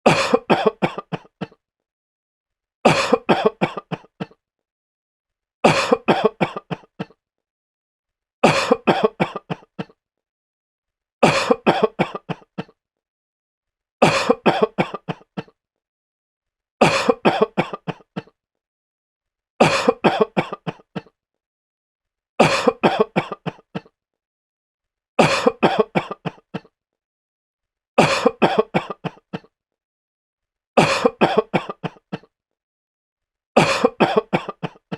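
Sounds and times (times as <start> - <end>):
man coughing: 0.0 - 1.6, 2.9 - 4.4, 5.6 - 7.2, 8.4 - 10.0, 11.2 - 12.7, 14.0 - 15.5, 16.8 - 18.3, 19.6 - 21.1, 22.4 - 23.9, 25.2 - 26.7, 28.0 - 29.5, 30.8 - 32.3, 33.6 - 34.9.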